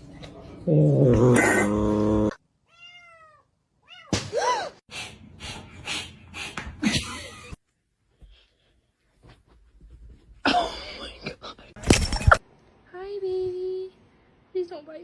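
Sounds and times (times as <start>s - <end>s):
cat meowing: 2.7s - 4.1s
knocks and scuffles: 8.1s - 10.4s.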